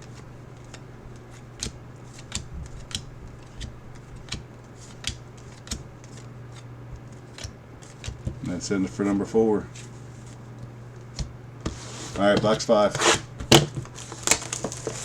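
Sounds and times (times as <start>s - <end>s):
cards clicking and snapping: 0.0s - 8.5s, 13.4s - 15.0s
steady low hum: 0.0s - 15.0s.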